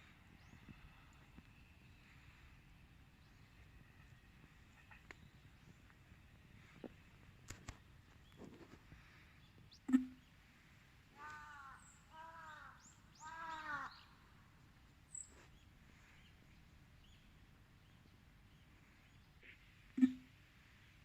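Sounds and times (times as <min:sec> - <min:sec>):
crow cawing: 0:11.2 - 0:14.1.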